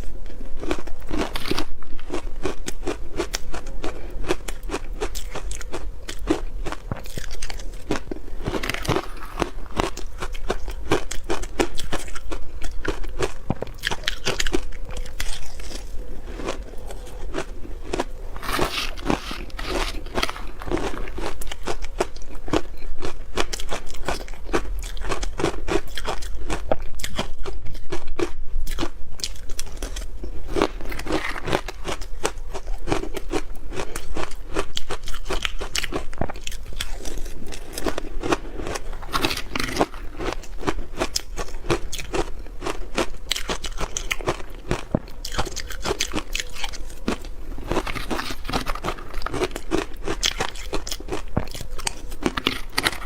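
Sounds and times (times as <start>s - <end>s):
ice being chewed: 0.0s - 53.0s.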